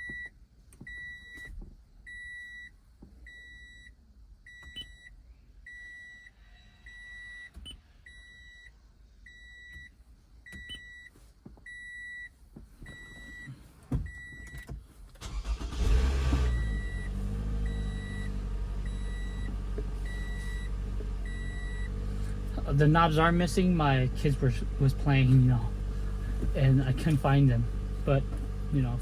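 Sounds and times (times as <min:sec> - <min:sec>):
car engine cranking and idling: 0:13.2 - 0:29.0
car warning chime beeping: 0:14.1 - 0:29.0.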